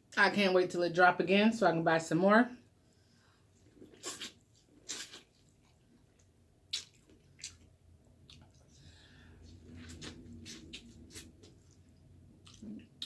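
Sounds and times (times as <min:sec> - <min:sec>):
wet chewing: 0:03.6 - 0:08.7, 0:09.4 - 0:13.0
lip smacks: 0:06.7 - 0:07.7.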